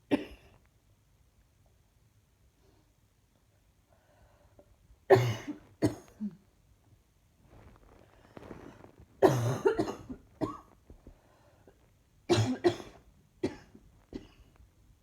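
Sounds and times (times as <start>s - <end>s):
person coughing: 5.1s - 6.4s, 9.2s - 10.7s, 12.3s - 14.5s.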